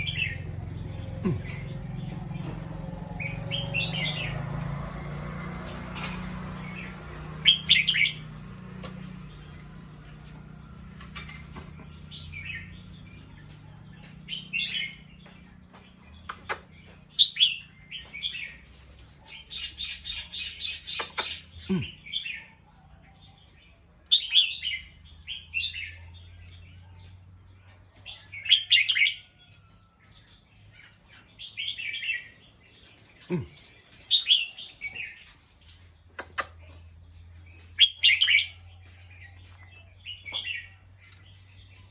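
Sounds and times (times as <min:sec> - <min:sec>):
bird chattering: 0:16.2 - 0:17.6, 0:19.5 - 0:22.4, 0:36.1 - 0:36.8.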